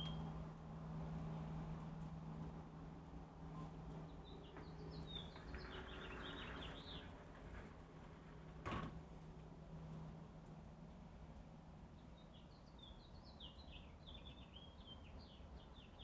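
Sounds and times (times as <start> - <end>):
small birds chirping: 3.9 - 7.1, 11.9 - 16.0.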